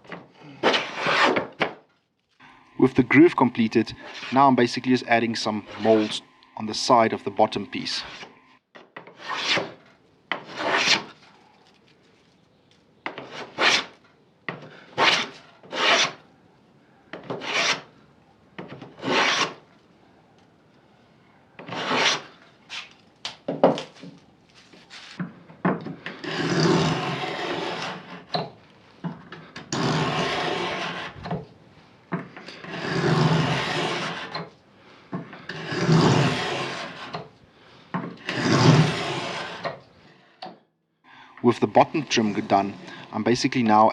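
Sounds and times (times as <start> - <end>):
hand tool cutting wooden trim: 0.0 - 1.8, 29.6 - 31.4, 32.4 - 34.4, 35.4 - 37.3, 38.1 - 39.8.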